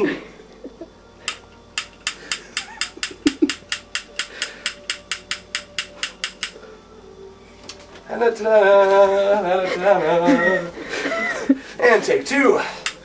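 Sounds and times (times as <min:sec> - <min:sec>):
lighter igniter clicking: 0:01.3 - 0:06.6.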